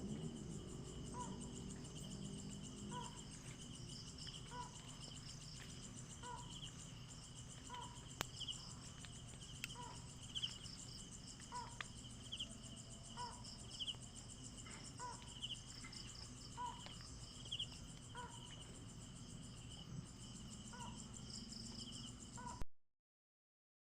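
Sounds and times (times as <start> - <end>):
high insect chorus: 0.0 - 22.6
pulsed high insect trill: 0.0 - 22.6.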